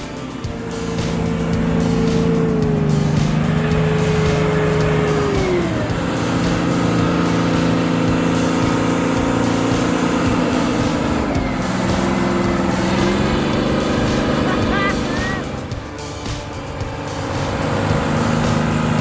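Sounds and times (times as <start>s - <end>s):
engine running under load: 0.0s - 19.0s.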